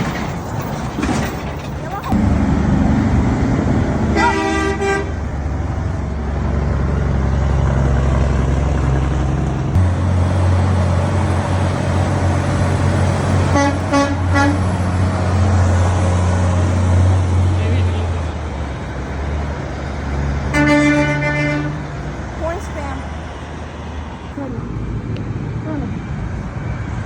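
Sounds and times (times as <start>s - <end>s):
truck engines and road traffic: 0.0s - 27.0s
truck horn honking: 4.1s - 5.4s, 13.4s - 14.9s, 20.5s - 22.0s.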